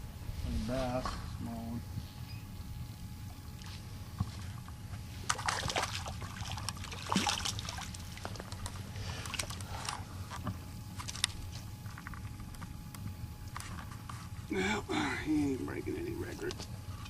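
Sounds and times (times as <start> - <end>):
steady low rumble: 0.0 - 17.0
water splashing and sloshing: 3.2 - 11.4.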